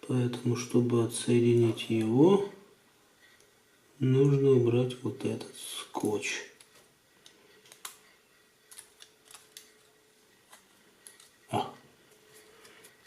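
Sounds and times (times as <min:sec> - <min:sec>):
small clicks and scratches: 0:06.6 - 0:11.5.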